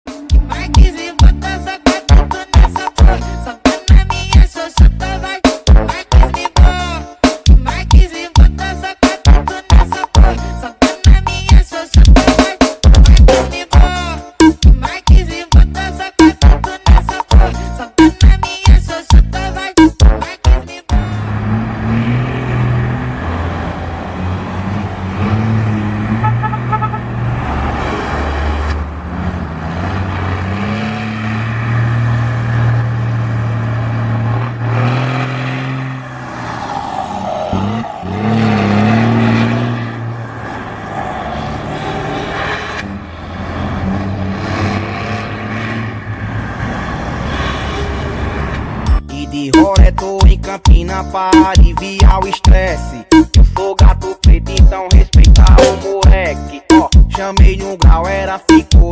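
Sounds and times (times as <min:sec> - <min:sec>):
diesel truck engine braking: 0:20.9 - 0:49.1.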